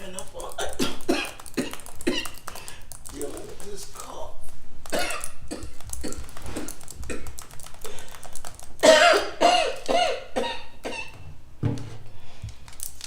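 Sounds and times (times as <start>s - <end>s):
woman coughing: 0.6s - 2.4s, 4.9s - 7.2s, 8.8s - 11.2s.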